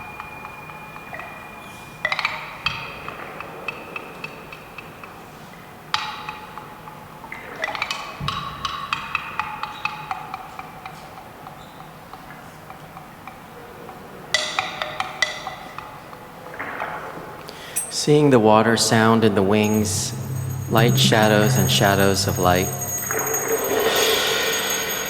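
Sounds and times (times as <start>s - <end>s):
hand percussion strikes: 19.6s - 25.0s.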